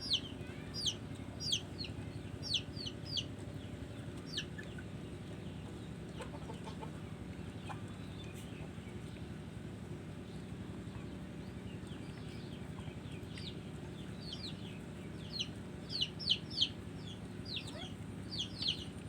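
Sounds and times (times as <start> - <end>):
bird chirping: 0.0 - 3.7, 11.9 - 19.0
low background rumble: 0.0 - 19.0.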